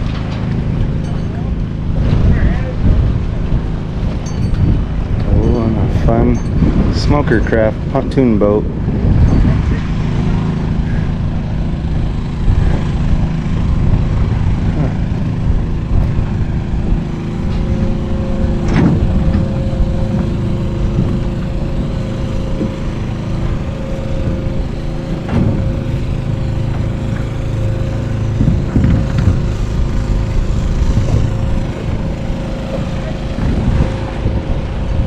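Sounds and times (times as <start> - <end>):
small engine running: 0.0 - 35.0
steady whine: 0.0 - 35.0
sharp knocks: 17.4 - 24.4, 25.1 - 34.0.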